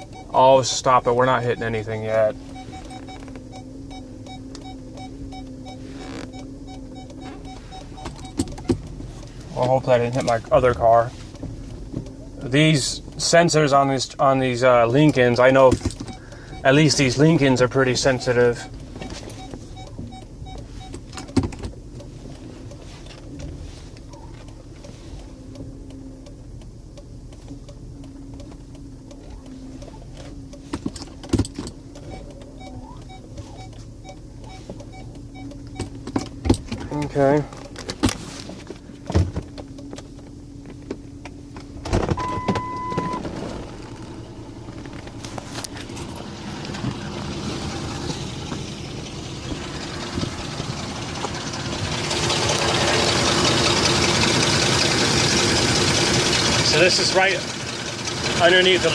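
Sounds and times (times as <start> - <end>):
car engine idling: 0.0 - 58.9
exhaust hissing: 0.0 - 58.9
faint short beeps: 1.4 - 8.6, 32.0 - 35.9, 42.2 - 43.2.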